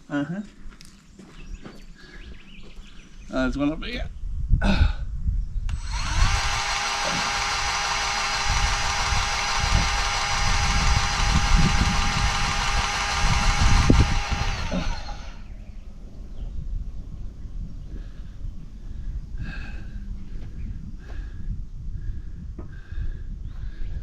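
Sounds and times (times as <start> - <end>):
grease gun motor running: 5.7 - 15.5.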